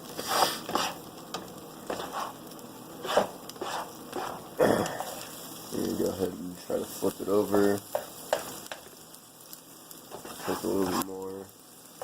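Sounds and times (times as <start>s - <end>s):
spatula scraping a frying pan: 0.0s - 5.4s, 10.1s - 11.2s
eggs sizzling in oil: 0.0s - 12.0s.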